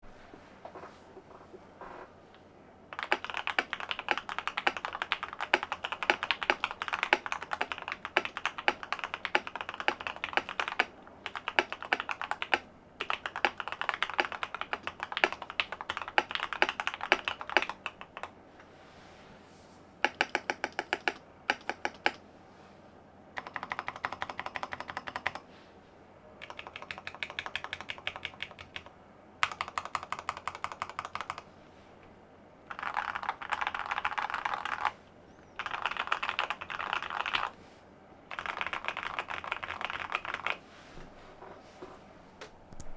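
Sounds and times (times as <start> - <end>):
fast typing on mechanical keyboard: 2.9 - 18.3, 20.0 - 22.2, 23.4 - 25.4, 26.4 - 31.5, 32.7 - 35.0, 35.6 - 37.6, 38.3 - 40.6
evenly spaced key presses: 2.9 - 18.4, 20.0 - 22.2, 23.4 - 25.4, 26.4 - 31.5, 32.7 - 35.0, 35.6 - 37.6, 38.3 - 40.6.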